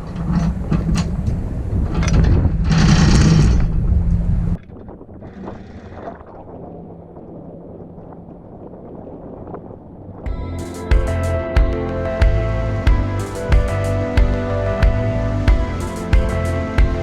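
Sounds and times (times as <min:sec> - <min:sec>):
wind buffeting microphone: 0:00.2 - 0:13.2.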